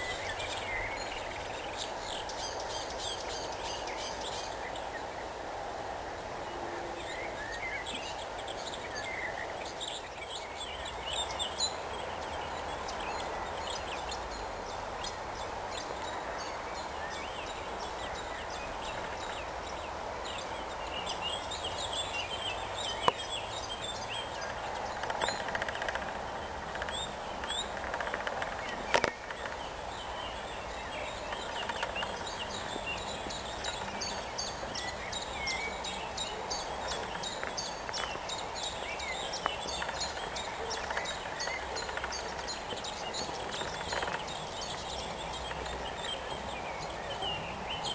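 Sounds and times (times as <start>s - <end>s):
songbirds singing: 0.0s - 47.9s
steady background hiss: 0.0s - 47.9s
sharp clicks: 25.0s - 29.6s.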